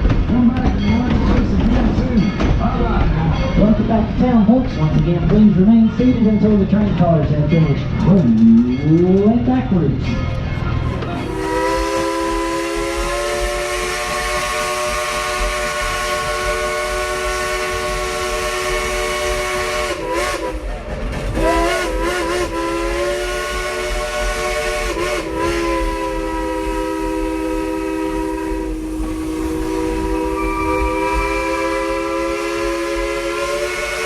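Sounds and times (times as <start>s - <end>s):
steam locomotive whistle: 11.2s - 20.7s, 21.3s - 34.0s.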